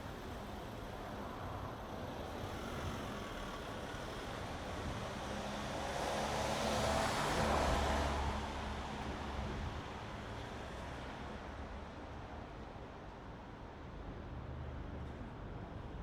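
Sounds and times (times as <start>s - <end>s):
low rumble of city traffic: 0.0s - 16.0s.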